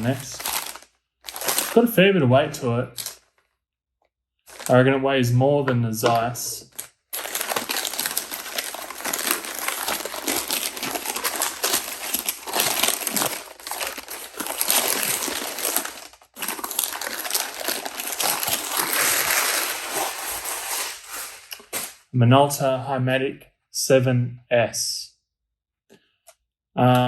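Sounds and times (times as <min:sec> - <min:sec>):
paper crumpling and crinkling: 0:00.0 - 0:01.9, 0:03.0 - 0:03.4, 0:04.5 - 0:04.8, 0:06.0 - 0:22.0.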